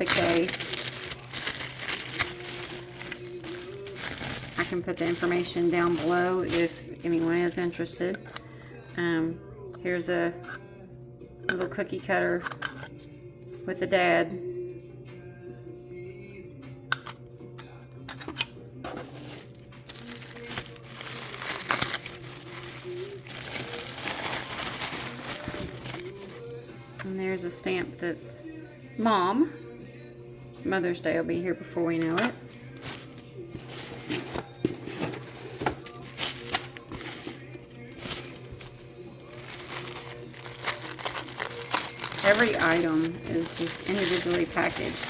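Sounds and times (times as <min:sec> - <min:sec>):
packaging crinkling and rustling: 0:00.0 - 0:07.6, 0:18.9 - 0:26.6, 0:32.5 - 0:45.0.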